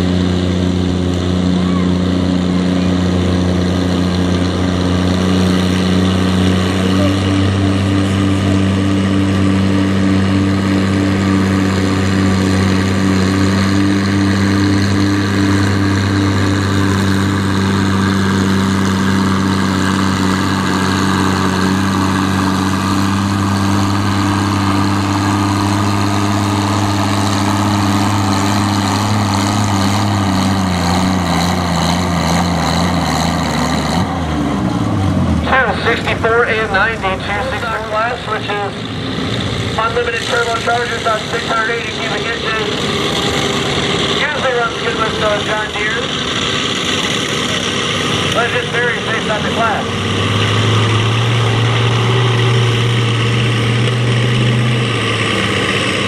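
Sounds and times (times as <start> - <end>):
tractor diesel engine running: 0.0 - 56.0.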